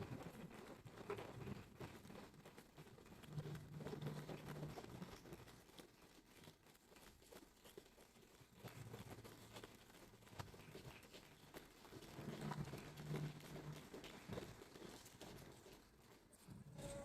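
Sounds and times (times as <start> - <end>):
faint low murmur: 16.3 - 17.0.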